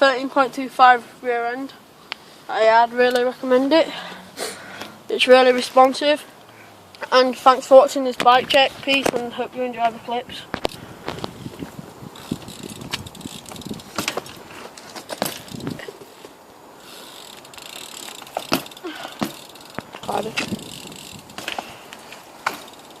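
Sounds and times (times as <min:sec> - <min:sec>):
bike rattling and ticking: 0:06.9 - 0:23.0
bike knocking on ground: 0:10.6 - 0:16.1, 0:18.0 - 0:23.0.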